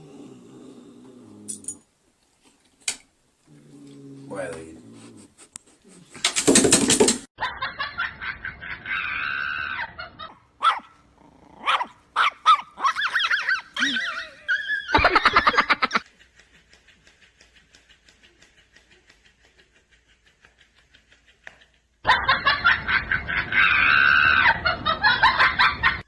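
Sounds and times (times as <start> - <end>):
people laughing: 13.8 - 26.0.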